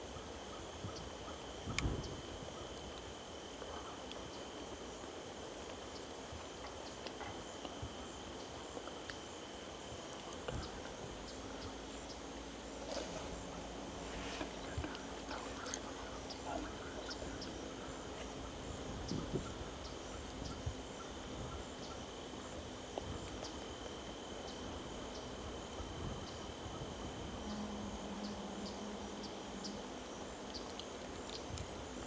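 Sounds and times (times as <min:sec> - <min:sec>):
insects trilling: 0:00.0 - 0:32.0
faint rustling: 0:12.7 - 0:16.7.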